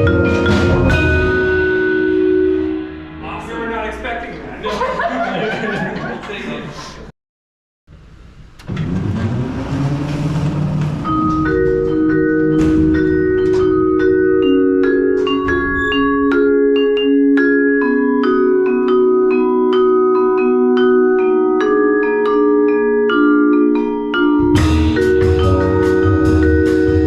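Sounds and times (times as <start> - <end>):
mallet percussion melody: 0.0 - 3.9, 10.4 - 27.0.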